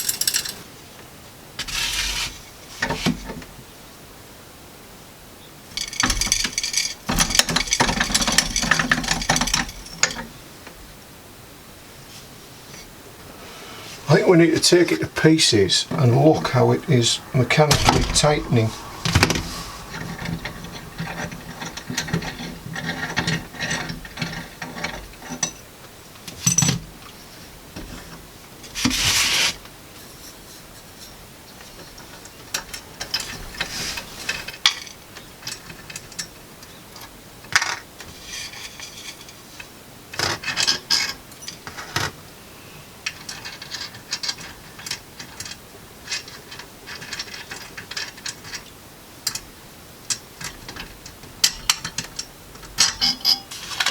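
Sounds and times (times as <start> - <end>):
metal parts clicking and scraping: 0.0 - 0.7, 1.6 - 3.2, 5.8 - 10.2, 17.6 - 25.5, 52.8 - 53.9.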